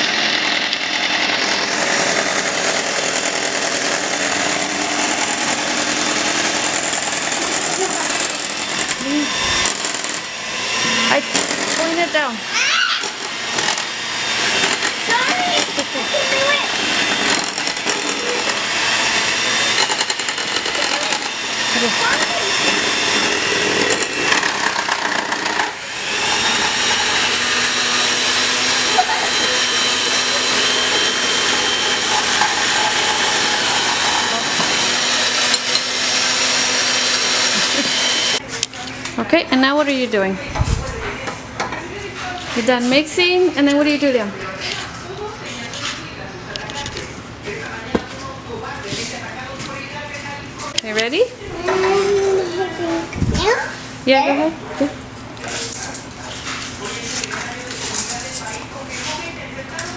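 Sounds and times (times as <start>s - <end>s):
electric mixer whirring: 0.0s - 45.8s.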